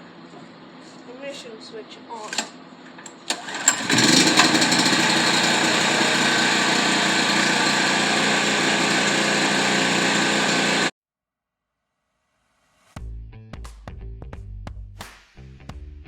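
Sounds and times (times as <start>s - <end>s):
starter clicks: 2.3s - 7.6s
generator engine running: 3.3s - 10.9s.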